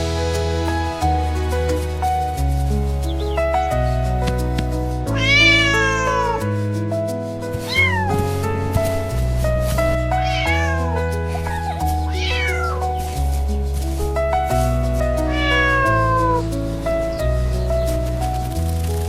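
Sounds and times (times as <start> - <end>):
soft background music: 0.0 - 19.0
cat meowing: 5.1 - 6.5, 7.6 - 8.5, 9.9 - 13.4, 15.2 - 17.2.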